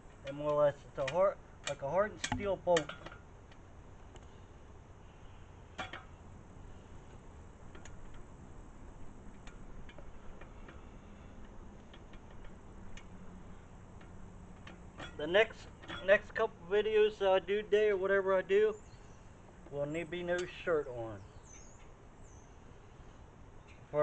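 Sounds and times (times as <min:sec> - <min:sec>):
low steady background rumble: 0:00.0 - 0:24.0
faint light clicks and ticks: 0:09.3 - 0:13.2.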